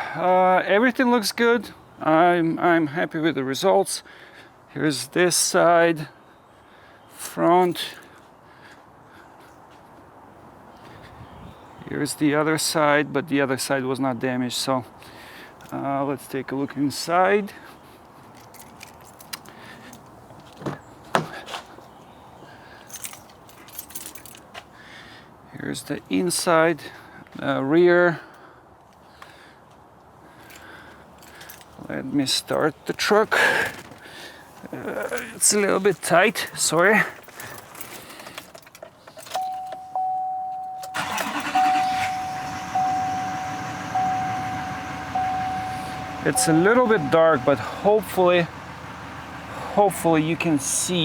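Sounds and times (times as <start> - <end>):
dashboard warning chime: 39.3 - 48.8
truck engine cranking and idling: 40.8 - 51.0.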